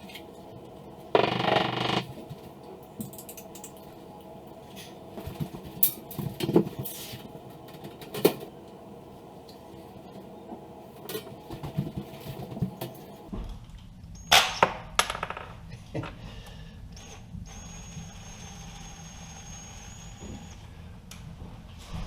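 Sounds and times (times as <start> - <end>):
high-pitched whine: 0.0 - 11.2, 16.9 - 20.8.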